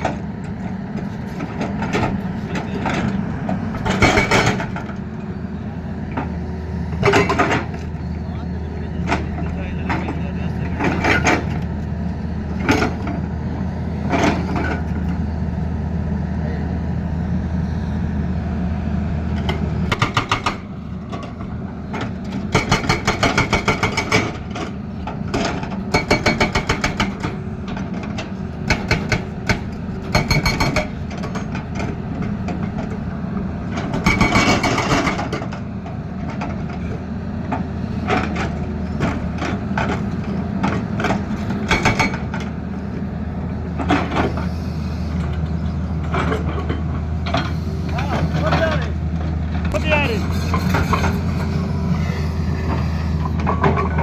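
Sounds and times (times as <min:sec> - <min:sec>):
excavator diesel engine running: 0:00.0 - 0:54.0
hydraulic breaker hammering: 0:19.9 - 0:20.7, 0:22.5 - 0:24.5, 0:25.4 - 0:27.4.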